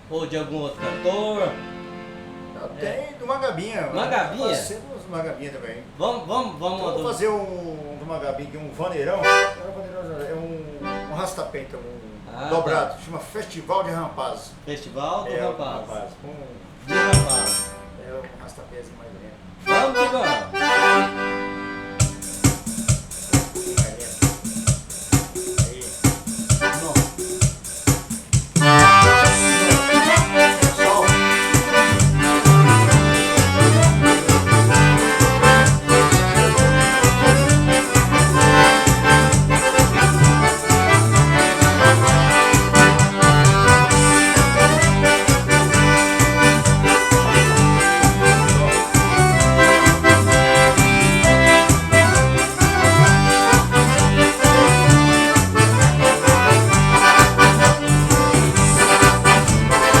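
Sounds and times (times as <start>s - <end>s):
accordion playing chords: 0.7s - 3.0s, 9.1s - 9.8s, 10.7s - 11.5s, 16.8s - 18.2s, 19.5s - 60.0s
pulsing bass line: 28.6s - 60.0s.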